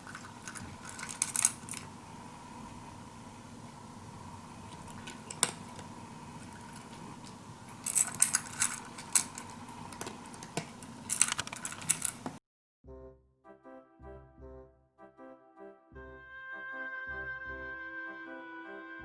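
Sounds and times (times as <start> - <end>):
cat crunching dry food: 0.0 - 2.0, 4.6 - 12.4
steady hum: 0.0 - 12.4.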